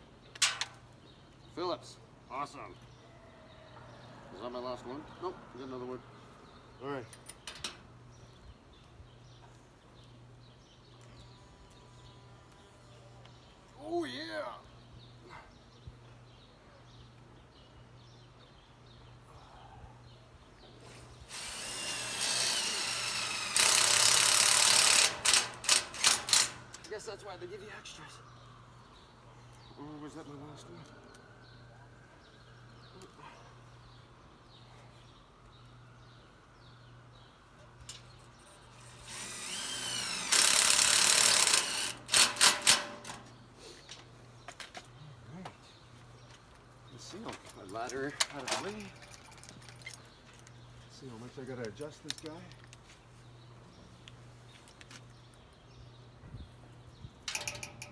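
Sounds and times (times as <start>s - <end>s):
impact driver driving a screw: 21.3s - 26.8s, 38.8s - 43.2s.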